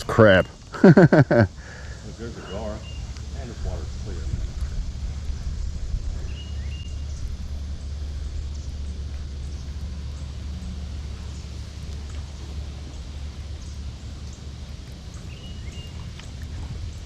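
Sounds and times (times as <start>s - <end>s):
bird chirp: 0.0s - 4.2s, 5.2s - 14.5s, 15.1s - 16.4s
steady low rumble: 0.0s - 17.0s
faint ticks: 11.3s - 12.3s.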